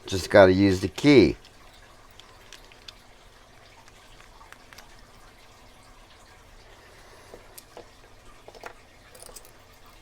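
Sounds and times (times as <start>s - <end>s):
small metallic key clicks: 9.1s - 9.6s.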